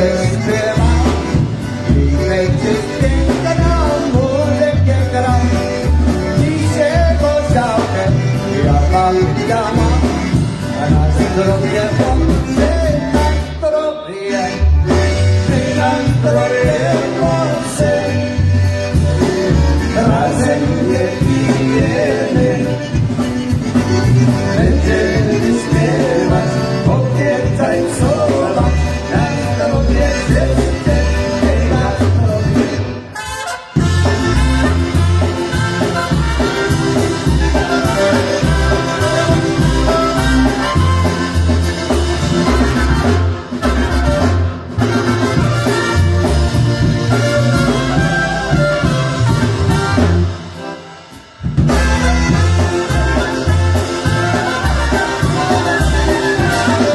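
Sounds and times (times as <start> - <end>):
polka band playing: 0.0 - 56.9.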